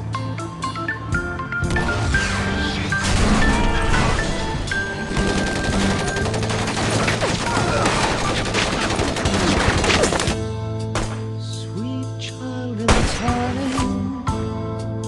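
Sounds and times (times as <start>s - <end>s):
film score music: 0.0s - 15.0s
automatic gunfire: 5.1s - 10.4s.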